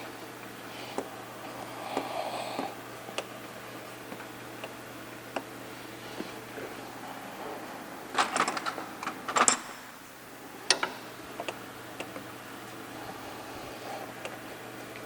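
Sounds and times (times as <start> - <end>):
steady low hum: 0.0 - 15.0
clicking and clattering of parts: 8.1 - 9.9, 10.7 - 12.2.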